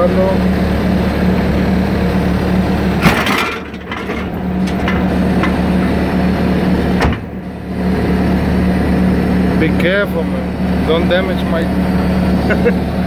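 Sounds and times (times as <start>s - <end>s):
diesel engine running: 0.0s - 13.0s
loud sharp metal clunk: 3.0s - 5.6s, 6.9s - 7.4s.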